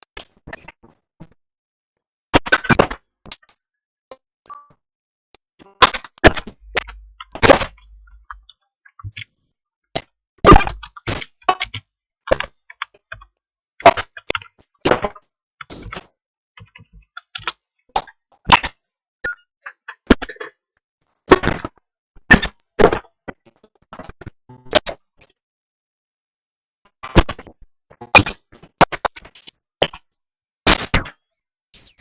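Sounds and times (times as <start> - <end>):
sharp cracks and knocks: 5.8 - 8.4, 10.0 - 15.2, 21.3 - 23.2, 27.0 - 30.1, 30.7 - 31.2.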